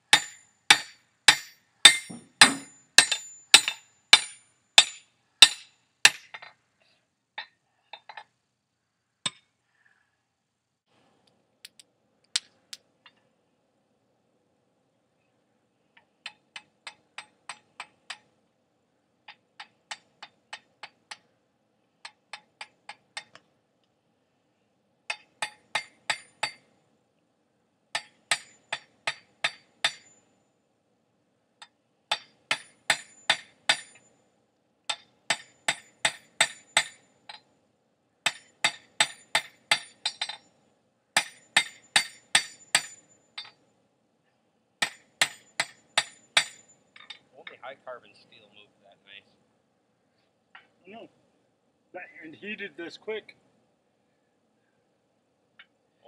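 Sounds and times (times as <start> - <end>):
hammer striking steel on anvil: 0.1 - 6.6, 25.1 - 26.6, 28.0 - 30.1, 32.1 - 34.0, 34.9 - 37.4, 38.3 - 40.4, 41.2 - 43.6, 44.8 - 47.2.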